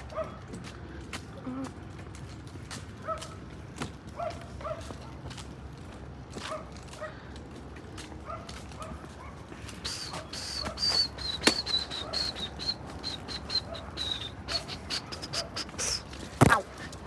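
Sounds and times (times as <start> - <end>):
distant dog-like yelps: 9.2 - 17.0
high bird chirps: 9.9 - 16.8.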